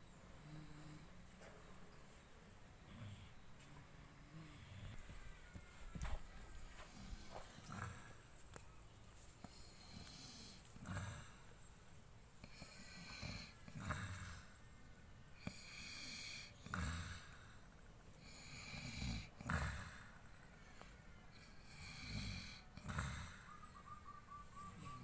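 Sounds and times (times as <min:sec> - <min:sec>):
faint hissing breath: 0:00.0 - 0:24.0
person snoring: 0:04.2 - 0:05.1, 0:06.8 - 0:08.2, 0:09.4 - 0:11.5, 0:12.4 - 0:14.6, 0:15.4 - 0:17.6, 0:18.2 - 0:20.2, 0:21.4 - 0:23.5.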